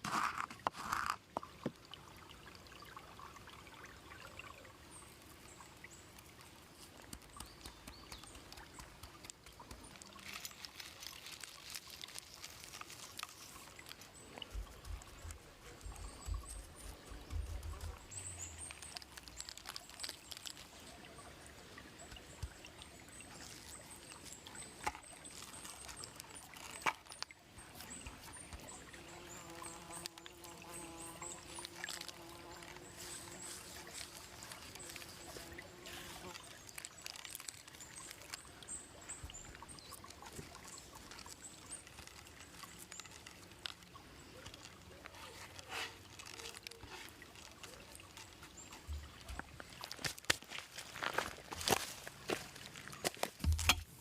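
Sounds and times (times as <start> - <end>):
campfire crackling and popping: 6.9 - 20.7.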